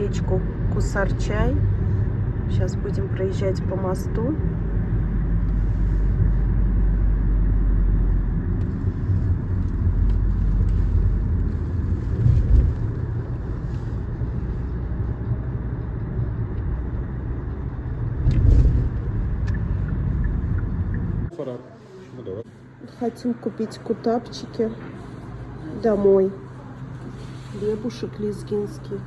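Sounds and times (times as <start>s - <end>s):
car engine rumble: 0.0s - 21.3s
tyres on road: 0.0s - 21.3s.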